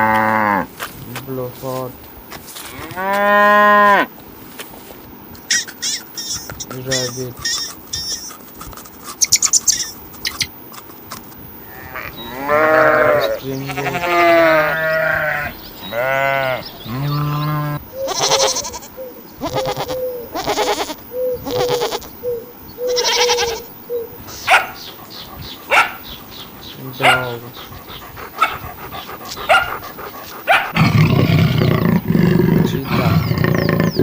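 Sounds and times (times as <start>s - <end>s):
farm animal bleating: 11.6s - 22.2s, 22.9s - 23.7s.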